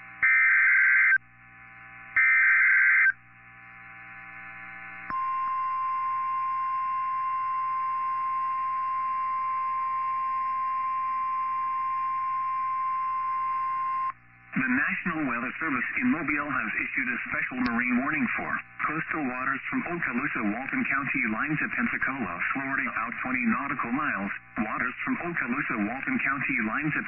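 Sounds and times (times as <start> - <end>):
steady warning alarm tone: 0.2 - 1.2, 2.2 - 3.2
faint radio hiss: 3.3 - 27.0.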